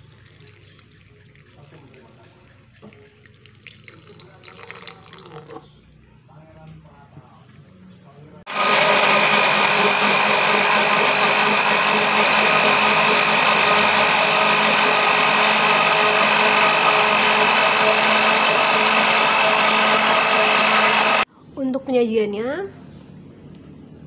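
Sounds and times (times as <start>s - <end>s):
blender motor whine: 8.5s - 21.3s
churning noise: 8.5s - 21.3s.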